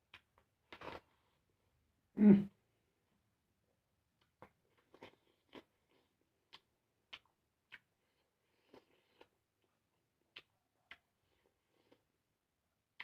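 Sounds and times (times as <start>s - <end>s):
mouth chewing food: 0.0s - 1.5s, 4.2s - 12.2s.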